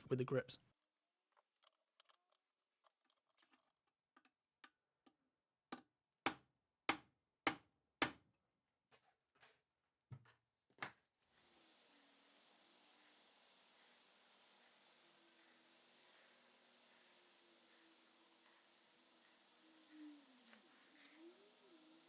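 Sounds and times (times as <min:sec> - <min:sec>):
faint steady hiss: 0:11.2 - 0:22.0.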